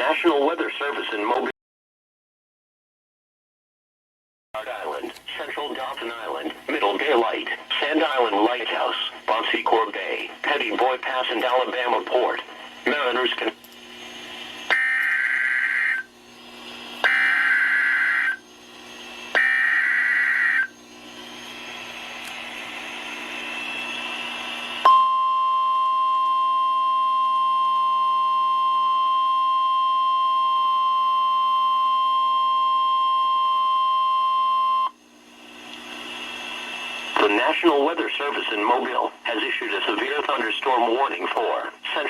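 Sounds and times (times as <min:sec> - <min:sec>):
steady warning alarm tone: 0:14.0 - 0:35.0.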